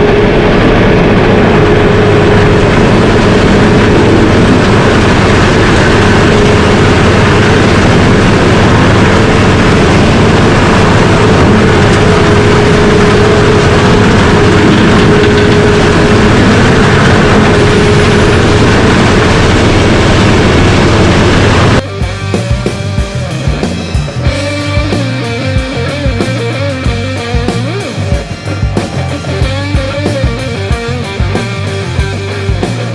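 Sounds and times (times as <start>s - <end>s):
industrial grinder running: 0.0s - 32.9s.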